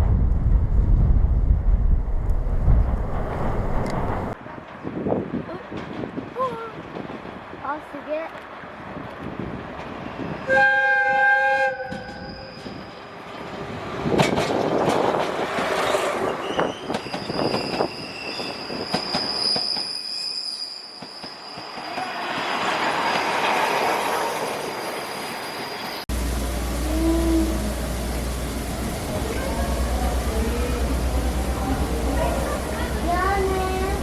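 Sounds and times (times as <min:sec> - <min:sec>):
train wheels rumbling and clicking: 0:00.0 - 0:10.4, 0:11.8 - 0:20.0, 0:20.9 - 0:34.0
train whistle: 0:10.4 - 0:12.9, 0:26.8 - 0:27.9.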